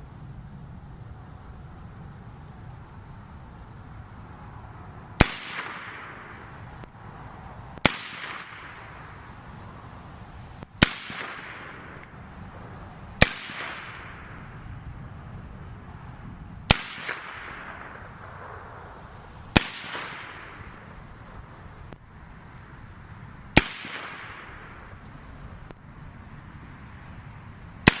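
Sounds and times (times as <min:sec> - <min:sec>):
gunshot echo: 0:05.2 - 0:06.5, 0:07.8 - 0:09.3, 0:10.8 - 0:12.1, 0:13.2 - 0:14.3, 0:16.7 - 0:18.8, 0:19.5 - 0:20.8, 0:23.6 - 0:24.8
suppressed rifle shots: 0:05.2 - 0:06.5, 0:07.8 - 0:09.4, 0:10.8 - 0:12.1, 0:13.2 - 0:14.3, 0:16.7 - 0:18.7, 0:19.5 - 0:20.9, 0:23.6 - 0:24.8.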